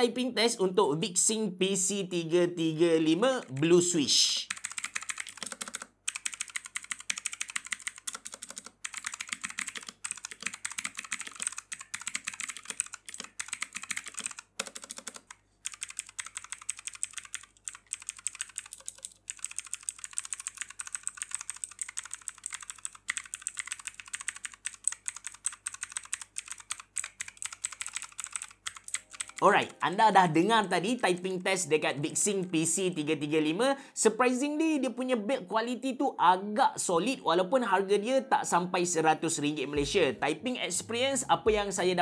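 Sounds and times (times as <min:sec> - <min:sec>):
mechanical keyboard key clicks: 0:04.5 - 0:29.8.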